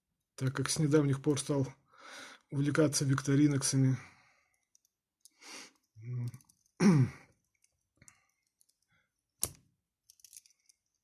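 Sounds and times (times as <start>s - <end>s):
man making short vocal sounds: 6.0s - 7.2s
man sighing: 6.0s - 7.3s.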